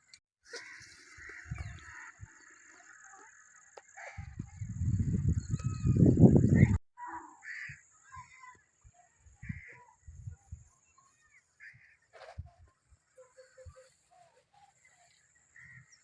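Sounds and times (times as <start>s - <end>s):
caw-like bird calls: 0.5s - 4.4s, 7.1s - 10.1s, 11.6s - 12.1s, 15.5s - 16.0s
wind rumble on microphone: 4.1s - 6.8s, 9.2s - 10.7s.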